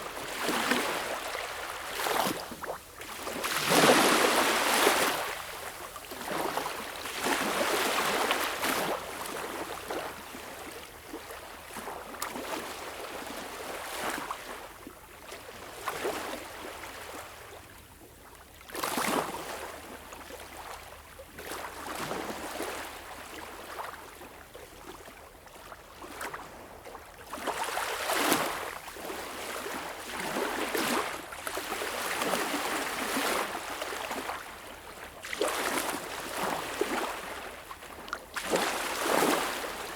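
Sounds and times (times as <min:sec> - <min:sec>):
ocean waves lapping on shore: 0:00.0 - 0:14.8, 0:25.9 - 0:39.9.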